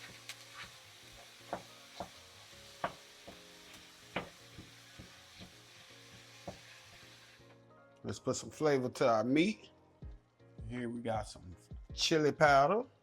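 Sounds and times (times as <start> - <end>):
beef and onions sizzling in oil: 0.0 - 7.6
utensil knocking against pot: 2.8 - 3.4, 4.1 - 5.5.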